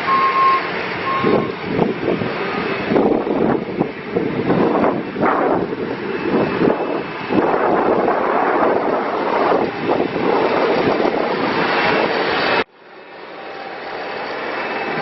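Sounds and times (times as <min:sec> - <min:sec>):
diesel engine running: 0:00.0 - 0:15.0
wind on microphone: 0:00.8 - 0:12.7.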